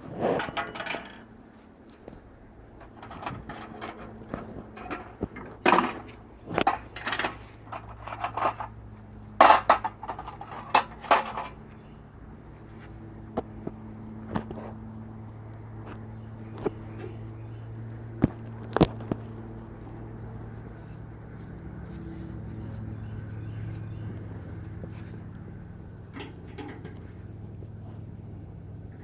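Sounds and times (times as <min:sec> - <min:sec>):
low steady hum: 0:00.0 - 0:29.0
metal tools clinking and knocking: 0:00.4 - 0:01.4, 0:02.8 - 0:08.8, 0:09.4 - 0:11.7, 0:26.1 - 0:27.1.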